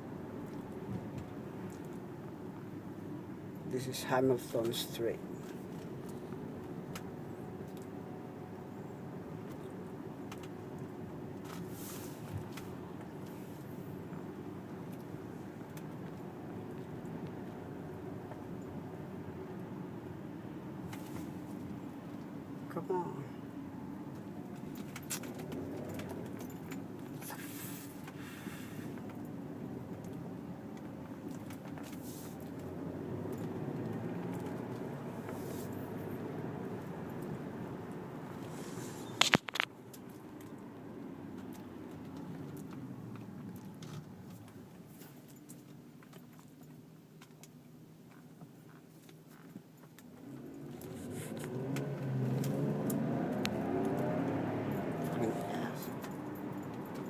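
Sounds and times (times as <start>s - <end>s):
car engine and road rumble: 0.0s - 57.0s
car engine speeding up: 50.2s - 56.5s.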